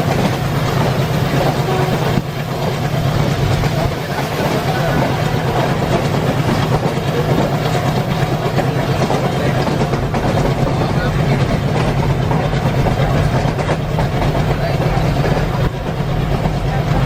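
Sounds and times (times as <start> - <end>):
diesel locomotive engine chugging: 0.0 - 17.0
train wheels rumbling on rails: 0.0 - 17.0.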